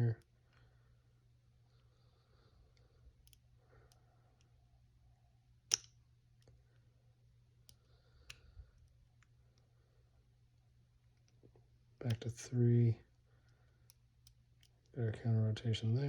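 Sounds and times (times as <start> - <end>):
low steady hum: 0.0 - 16.0
lock pick clicks: 5.7 - 6.0.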